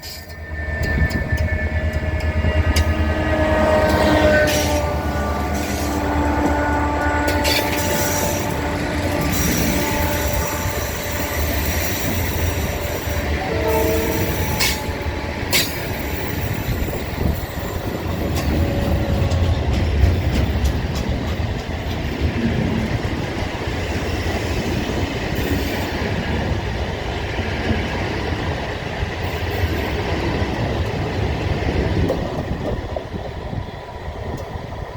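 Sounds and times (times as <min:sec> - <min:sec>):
high wheel squeal: 0:00.0 - 0:19.7
locomotive horn: 0:00.0 - 0:20.1
wheels clacking over rail joints: 0:00.0 - 0:32.9
train rumbling past: 0:00.0 - 0:34.9.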